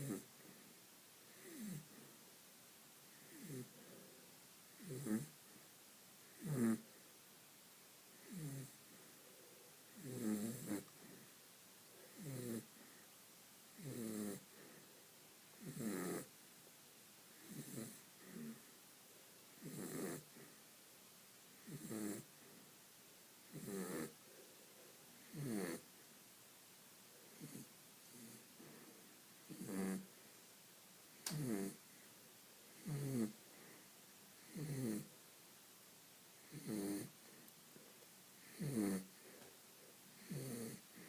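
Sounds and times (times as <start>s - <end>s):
dog snoring: 0.0s - 0.3s, 1.3s - 2.1s, 3.2s - 4.0s, 4.8s - 5.4s, 6.3s - 7.0s, 8.2s - 8.8s, 10.0s - 11.2s, 12.1s - 12.7s, 13.8s - 14.8s, 15.6s - 16.3s, 17.4s - 18.7s, 19.6s - 20.5s, 21.6s - 22.3s, 23.5s - 24.2s, 25.2s - 25.9s, 27.3s - 28.8s, 29.5s - 30.1s, 31.3s - 31.8s, 32.8s - 33.7s, 34.4s - 35.1s, 36.4s - 37.2s, 38.4s - 39.4s, 40.2s - 41.0s.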